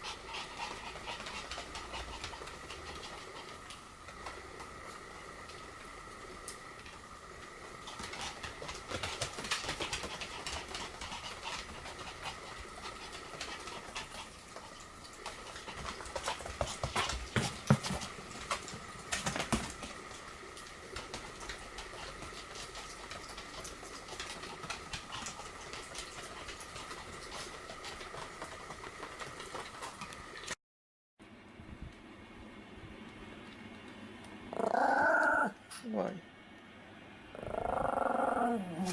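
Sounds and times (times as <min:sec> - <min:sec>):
paws scrabbling: 0:00.0 - 0:30.5
dog growling: 0:34.5 - 0:35.6, 0:37.3 - 0:38.9.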